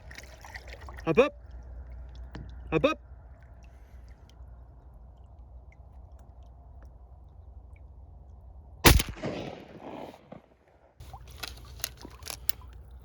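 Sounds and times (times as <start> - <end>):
shotgun shot echoing: 8.9 - 10.7
small clicks and knocks: 11.2 - 12.8.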